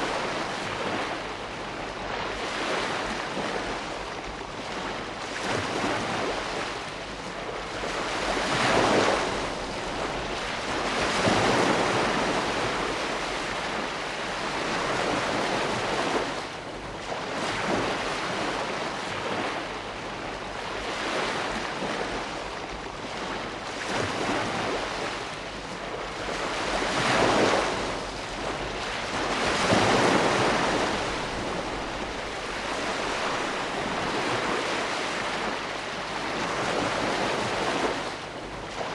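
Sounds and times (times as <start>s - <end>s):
ocean waves breaking on shore: 0.0s - 38.9s.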